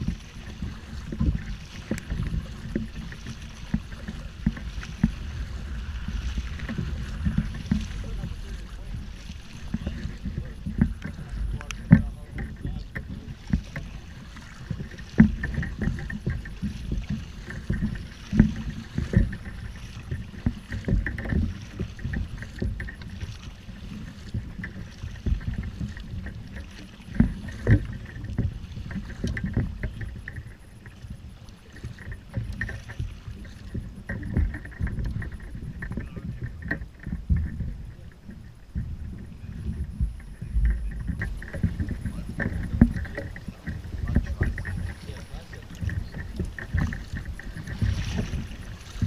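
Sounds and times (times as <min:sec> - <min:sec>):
low rumble: 0:00.0 - 0:20.4, 0:32.2 - 0:49.0
hull knocks: 0:00.0 - 0:49.0
water sloshing against hull: 0:00.0 - 0:49.0.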